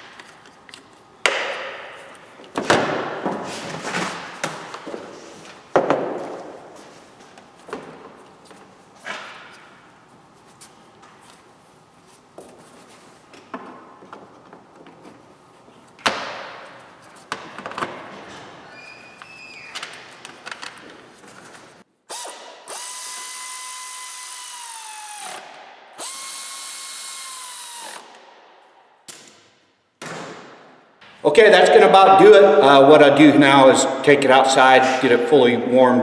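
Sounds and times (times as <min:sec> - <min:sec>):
power drill whine: 0:22.1 - 0:28.2.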